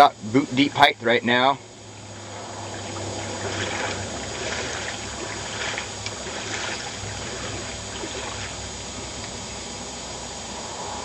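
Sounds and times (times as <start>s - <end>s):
boots splashing through water: 2.4s - 8.6s.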